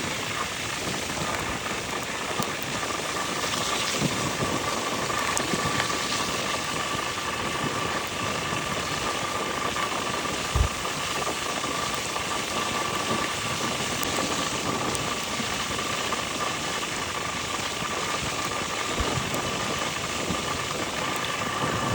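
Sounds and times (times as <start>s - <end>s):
rain hissing: 0.0s - 21.9s
low thump: 10.6s - 10.8s.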